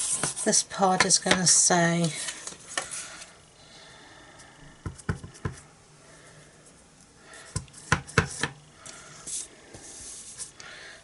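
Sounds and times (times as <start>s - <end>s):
stamping supplies knocking and clicking: 0.9s - 1.5s, 4.8s - 5.6s.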